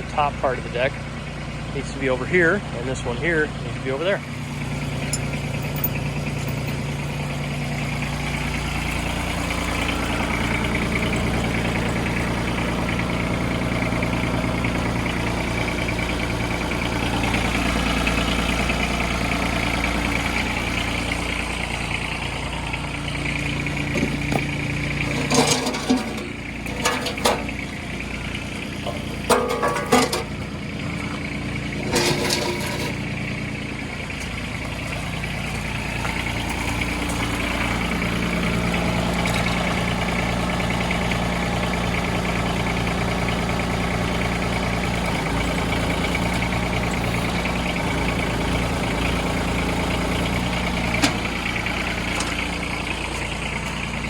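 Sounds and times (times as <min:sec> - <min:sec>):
engine running: 0:00.0 - 0:54.0
metal clanks: 0:05.0 - 0:07.1, 0:23.6 - 0:33.2.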